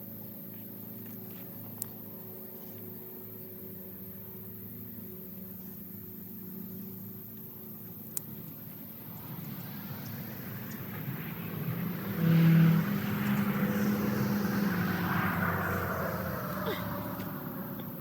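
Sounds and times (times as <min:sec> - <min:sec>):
motor vehicle passing by: 0:08.8 - 0:18.0.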